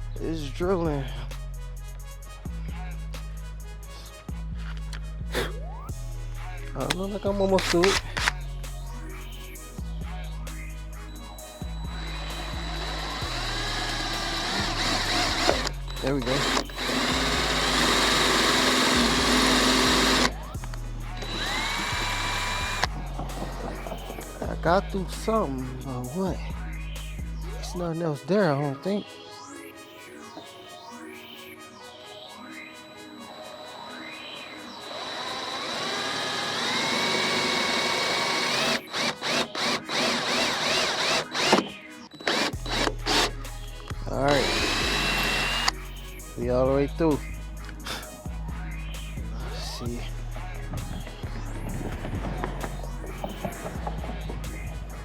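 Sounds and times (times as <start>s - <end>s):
electric drill boring through steel: 7.6s - 8.3s, 11.9s - 24.5s, 33.2s - 43.4s, 44.3s - 45.8s.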